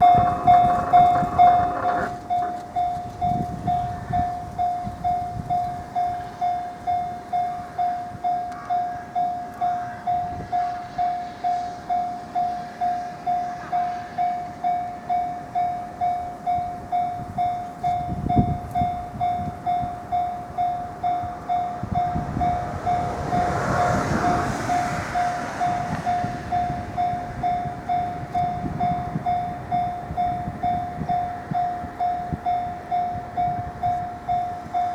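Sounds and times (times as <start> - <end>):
rushing noise: 0.0 - 4.1, 21.0 - 28.9
level-crossing warning bell: 0.0 - 34.9.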